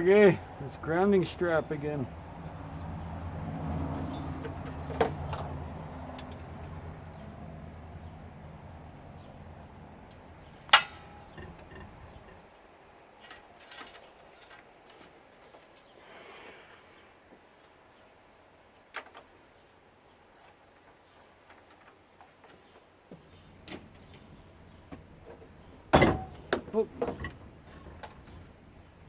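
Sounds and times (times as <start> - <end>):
insects chirping: 0.0 - 29.0
sharp metallic clank: 10.7 - 12.2.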